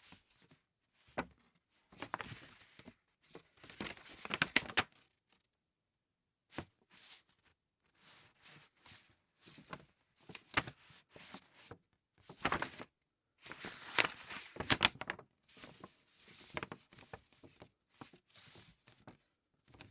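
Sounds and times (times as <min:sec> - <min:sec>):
thick paper rustling: 0:12.4 - 0:12.8, 0:13.5 - 0:15.2.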